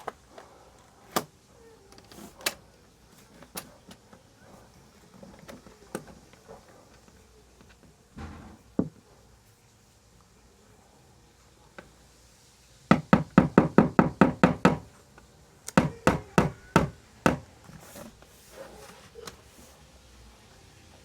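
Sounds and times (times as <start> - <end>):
rapid sharp knocking: 12.9 - 14.8, 15.8 - 17.4.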